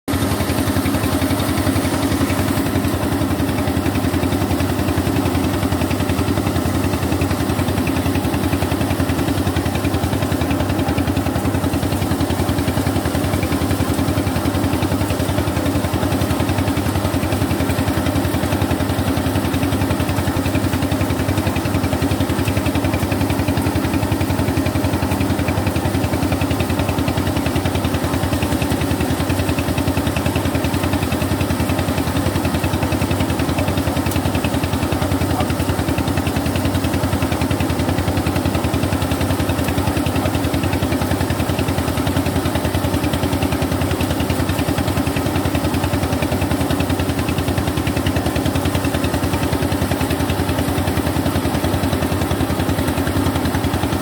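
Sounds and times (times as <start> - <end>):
threshing machine droning: 0.1 - 54.0.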